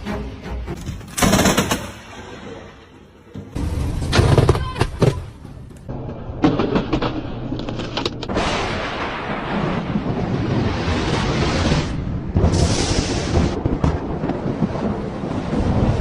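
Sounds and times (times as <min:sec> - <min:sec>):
sharp thunder cracks: 0:08.3 - 0:16.0.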